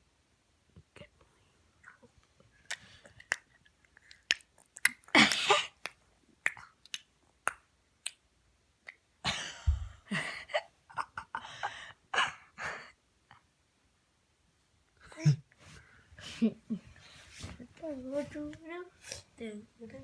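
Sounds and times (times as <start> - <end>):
baby mouth clicks and smacks: 2.6 - 8.2.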